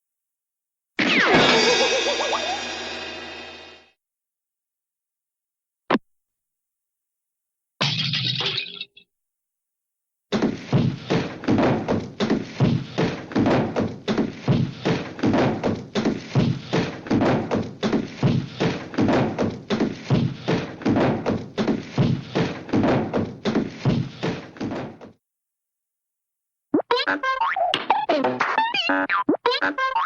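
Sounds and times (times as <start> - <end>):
cartoon thunks: 10.3 - 25.2.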